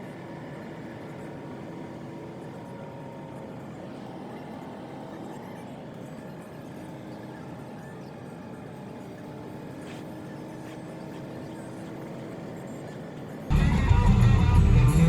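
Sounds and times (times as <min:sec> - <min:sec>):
vehicle driving rumble: 0:13.5 - 0:15.0.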